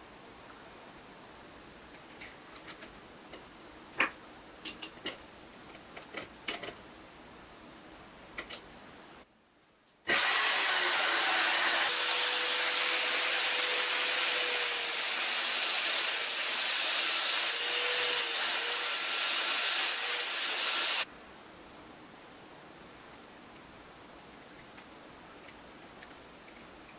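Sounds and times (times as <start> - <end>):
electric power tool whining: 10.1 - 21.1.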